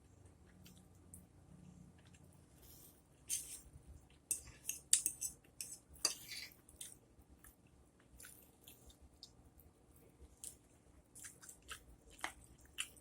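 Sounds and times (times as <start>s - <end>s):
soft chewing: 0.0s - 13.0s
cutlery scraping on plate: 4.3s - 6.6s.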